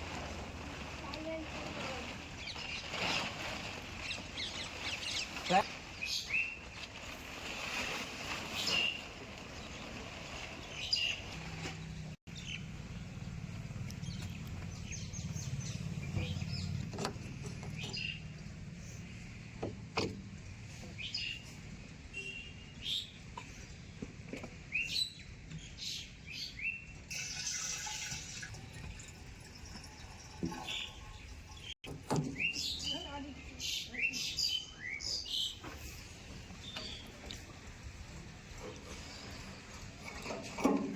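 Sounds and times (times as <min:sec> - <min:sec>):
small birds chirping: 0:00.7 - 0:19.3, 0:29.6 - 0:37.7.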